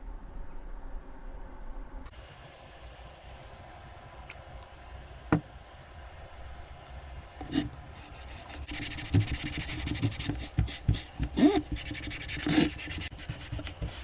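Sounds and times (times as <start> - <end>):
hand rubbing on wood: 6.6 - 14.0.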